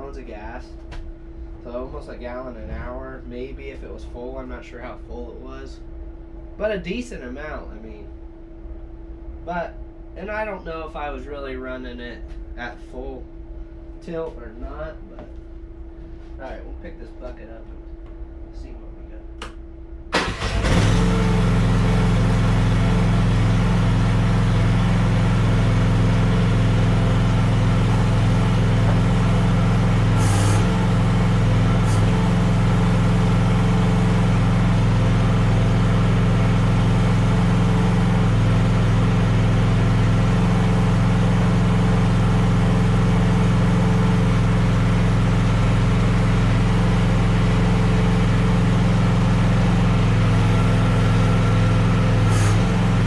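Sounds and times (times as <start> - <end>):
excavator engine running: 20.1 - 53.0.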